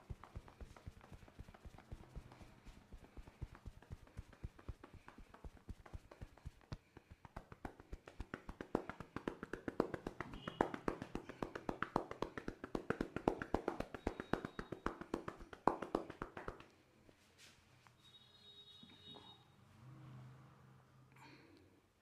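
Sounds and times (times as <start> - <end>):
hands tapping on head: 0.0 - 16.8.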